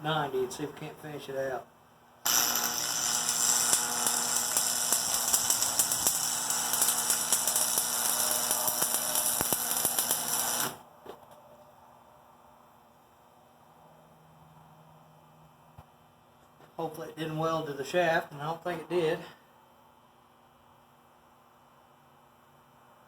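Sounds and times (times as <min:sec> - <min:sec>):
welding arc hissing and crackling: 0:02.2 - 0:10.8.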